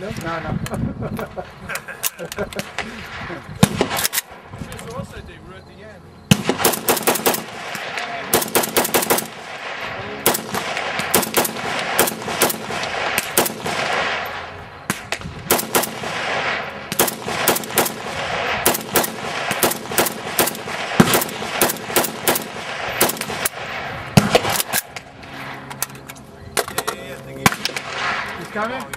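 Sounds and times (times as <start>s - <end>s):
rifle gunshots: 2.6s - 4.5s, 6.3s - 25.7s, 27.4s - 28.8s
gunshot echo ringing: 6.3s - 25.7s, 27.4s - 28.8s.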